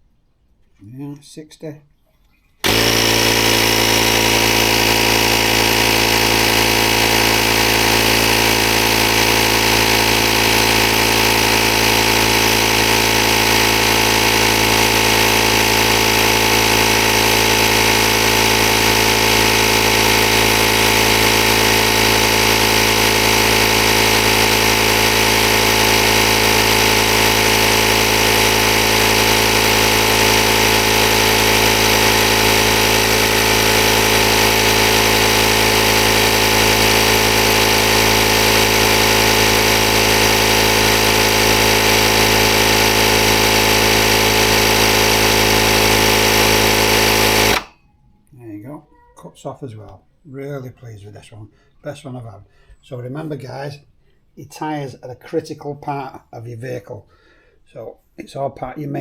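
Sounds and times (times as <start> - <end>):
tyre inflator compressor running: 2.6 - 47.8.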